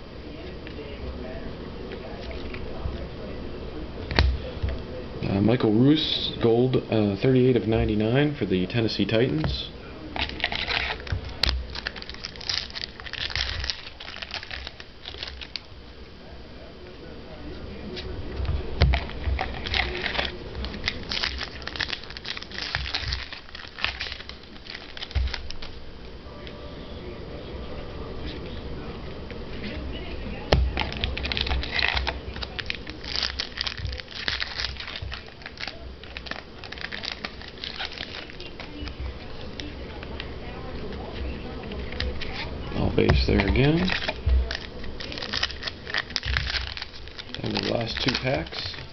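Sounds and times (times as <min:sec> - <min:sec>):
cards rustling: 0:08.6 - 0:15.7, 0:17.9 - 0:26.6, 0:29.6 - 0:48.9
wrapper crinkling: 0:10.1 - 0:15.7, 0:18.9 - 0:25.8, 0:30.6 - 0:48.9.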